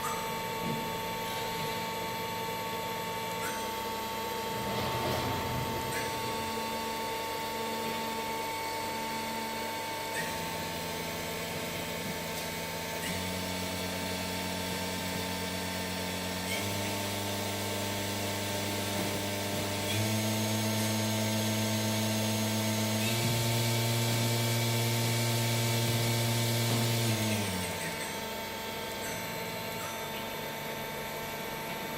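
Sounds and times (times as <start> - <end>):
steady high whine: 0.0 - 31.9
machine spindle whine rising in steps: 1.9 - 31.9.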